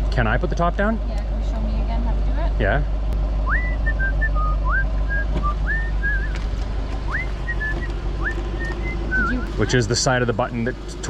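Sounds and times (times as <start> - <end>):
car engine idling: 0.0 - 11.0
person whistling a tune: 3.5 - 6.4, 7.1 - 9.5.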